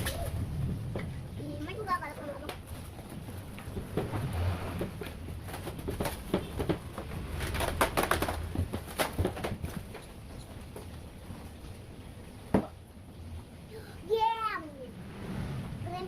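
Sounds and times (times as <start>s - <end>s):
parts and packaging rattling: 2.6s - 11.0s.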